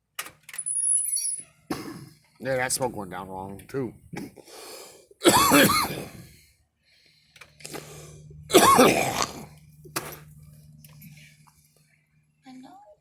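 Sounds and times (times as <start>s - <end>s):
girl coughing: 1.7s - 2.1s, 5.2s - 6.2s, 8.5s - 9.5s.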